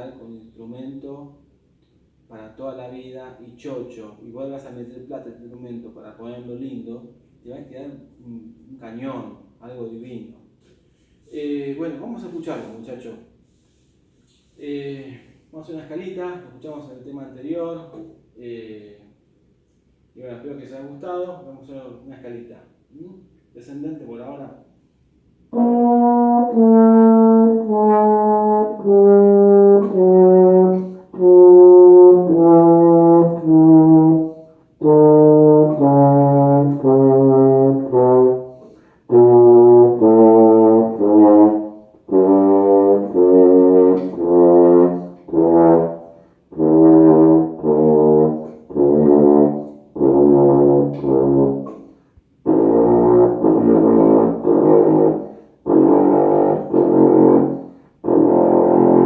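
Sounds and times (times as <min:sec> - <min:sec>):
euphonium playing a descending scale: 0:25.6 - 0:38.5.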